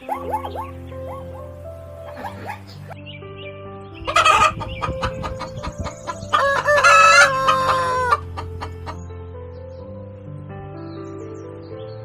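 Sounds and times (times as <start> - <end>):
background music: 0.0 - 12.0
rooster crowing: 6.2 - 8.7.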